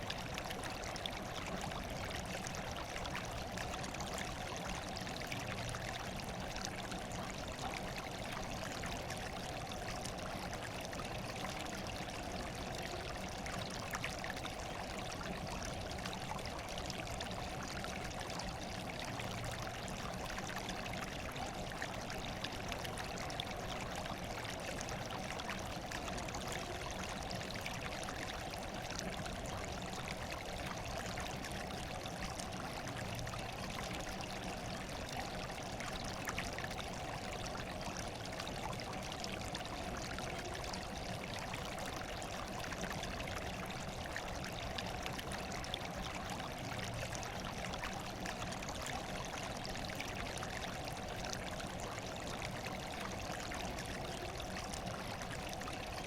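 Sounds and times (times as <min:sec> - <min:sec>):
water trickling and splashing: 0:00.0 - 0:56.0.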